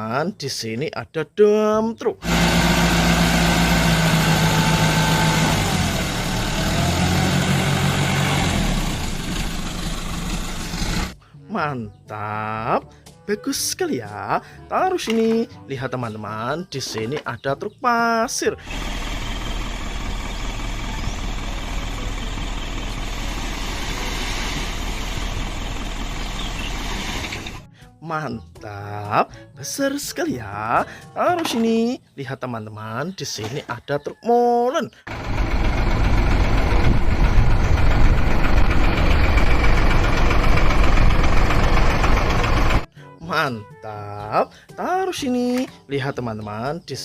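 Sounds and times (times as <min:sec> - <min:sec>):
truck engine idling: 0:02.2 - 0:11.2, 0:18.6 - 0:27.7, 0:35.1 - 0:42.9.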